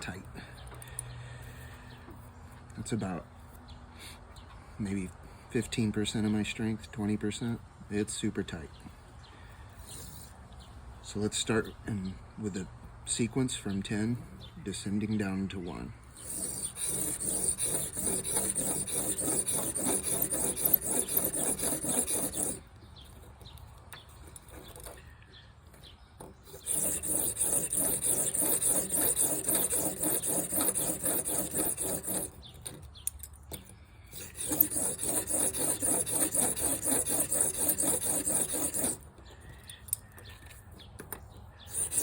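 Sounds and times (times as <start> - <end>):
blade scraping on sandpaper: 9.8 - 10.3, 16.2 - 25.1, 26.2 - 40.6, 41.6 - 42.0.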